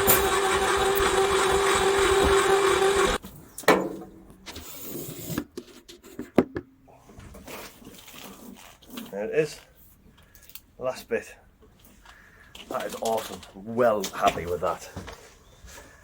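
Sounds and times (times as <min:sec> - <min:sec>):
cable stripping machine humming: 0:00.0 - 0:03.2.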